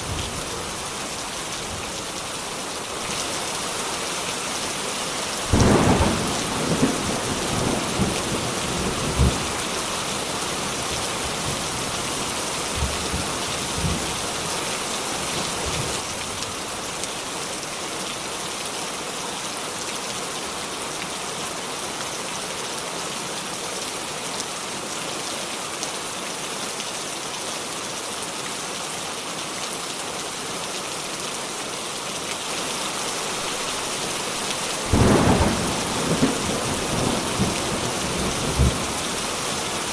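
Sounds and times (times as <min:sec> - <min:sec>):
heavy rain hissing: 0:00.0 - 0:16.9, 0:32.4 - 0:39.9
thunder rumbling: 0:34.9 - 0:39.9.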